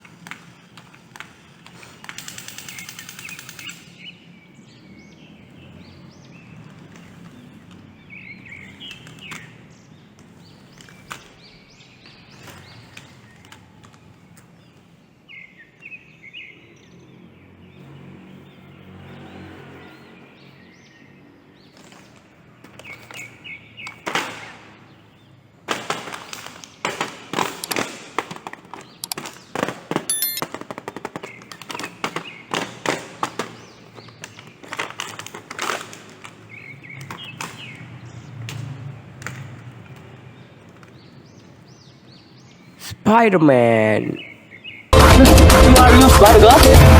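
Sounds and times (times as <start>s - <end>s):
birds chirping faintly: 0.0s - 24.0s, 39.4s - 45.0s.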